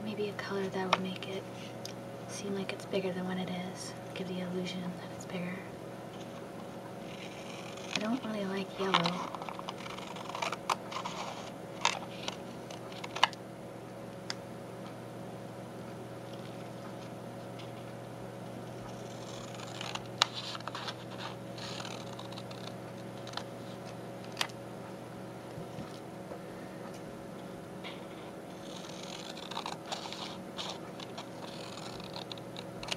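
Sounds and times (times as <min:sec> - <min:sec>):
steady low hum: 0:00.0 - 0:32.9
card scraping and rustling: 0:06.1 - 0:06.4, 0:07.0 - 0:13.4, 0:18.7 - 0:24.6, 0:27.8 - 0:32.9
scissors snipping card: 0:07.1 - 0:13.4, 0:28.6 - 0:32.9.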